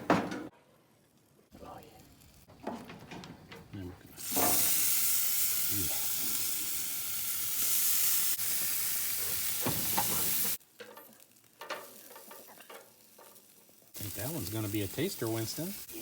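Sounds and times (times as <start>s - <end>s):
meat sizzling on a grill: 3.4s - 16.0s.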